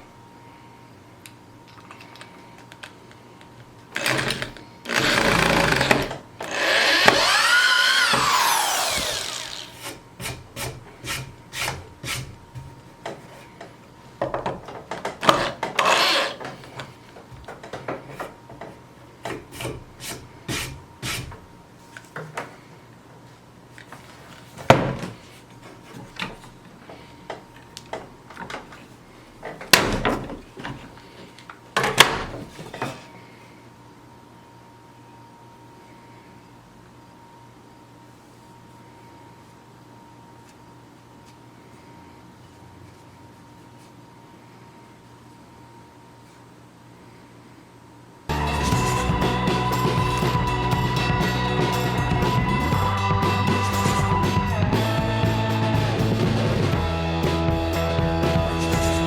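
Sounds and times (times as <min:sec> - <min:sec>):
power drill boring into wood: 0:04.0 - 0:09.8, 0:15.2 - 0:16.4.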